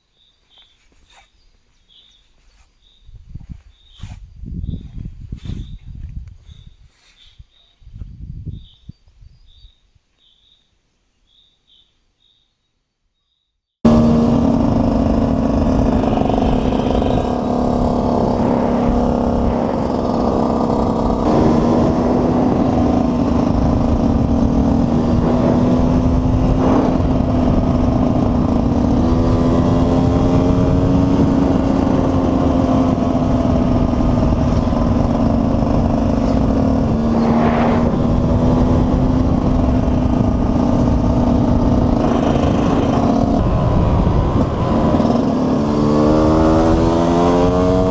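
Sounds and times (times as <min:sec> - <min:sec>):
two-stroke motorcycle engine running: 0:13.9 - 0:37.2, 0:38.0 - 0:47.9.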